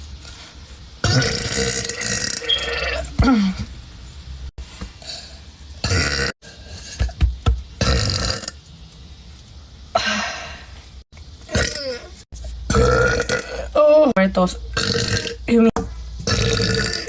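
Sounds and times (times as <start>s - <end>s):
woman burping: 11.5s - 12.1s, 12.7s - 14.1s, 16.3s - 17.0s.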